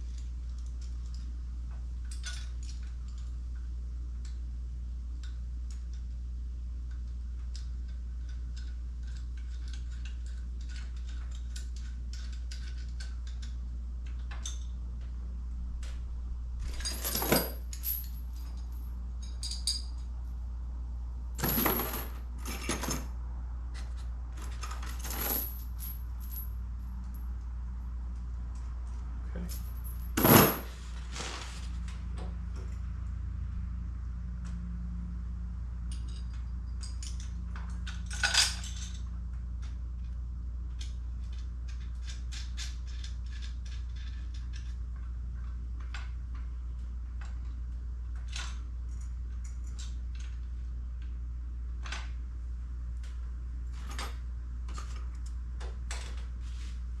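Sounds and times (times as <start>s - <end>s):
steady low hum: 0.0s - 57.0s
metal bolts clinking: 16.6s - 20.0s.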